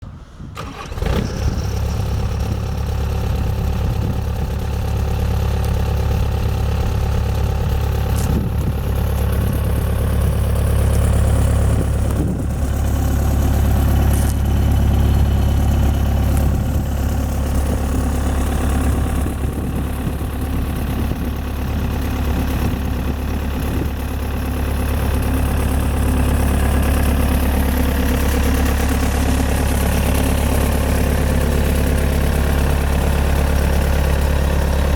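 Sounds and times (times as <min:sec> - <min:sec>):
diesel engine idling: 0:00.2 - 0:34.9.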